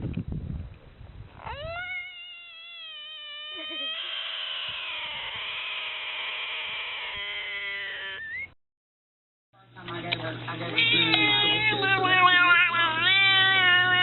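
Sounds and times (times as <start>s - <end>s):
harsh rough animal call: 1.4s - 8.5s
animal calling: 1.4s - 8.6s.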